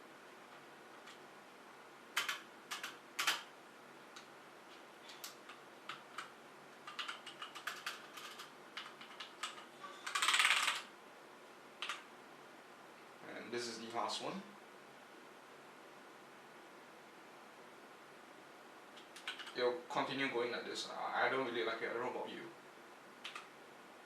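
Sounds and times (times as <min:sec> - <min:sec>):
mechanical keyboard keystrokes: 0:02.2 - 0:03.5, 0:06.9 - 0:10.9, 0:19.1 - 0:19.6, 0:23.2 - 0:23.5.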